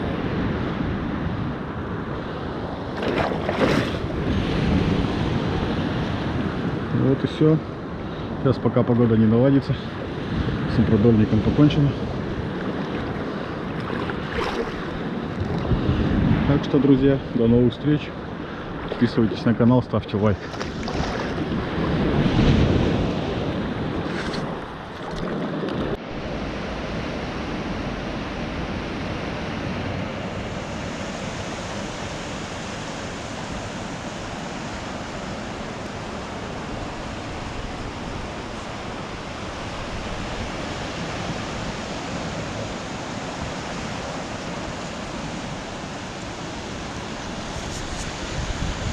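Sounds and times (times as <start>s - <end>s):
surf washing on shore: 0.0s - 48.9s
wind buffeting microphone: 9.3s - 17.5s, 20.3s - 30.1s, 44.3s - 48.9s.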